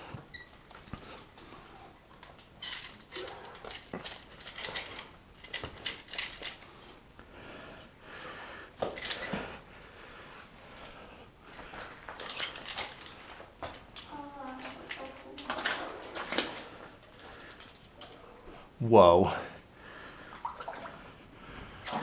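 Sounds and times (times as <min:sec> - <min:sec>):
small knocks and clinks: 0:00.5 - 0:06.7, 0:11.7 - 0:18.3
person wading through water: 0:20.2 - 0:21.2.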